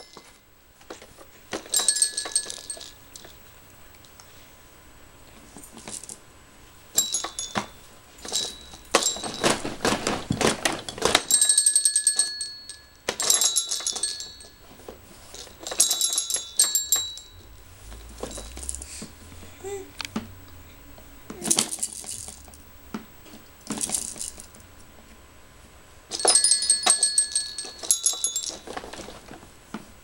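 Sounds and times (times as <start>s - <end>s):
baby toy bells jingling: 1.6s - 3.4s, 7.0s - 9.7s, 11.3s - 14.7s, 15.4s - 19.0s, 21.4s - 22.6s, 26.1s - 28.8s.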